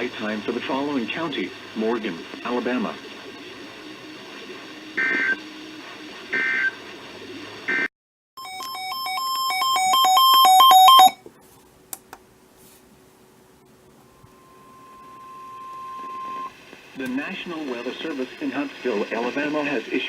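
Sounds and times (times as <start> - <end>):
warbling data bursts: 13.9 - 16.6.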